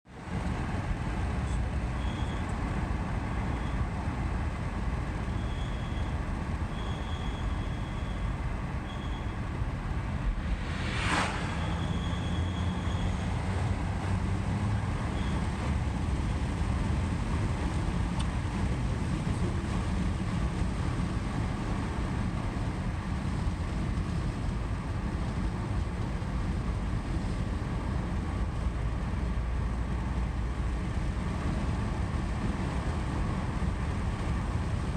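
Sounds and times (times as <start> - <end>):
car road and engine noise: 0.0 - 34.9
sudden burst of noise: 9.4 - 13.6
high-pitched squeak: 11.4 - 13.3.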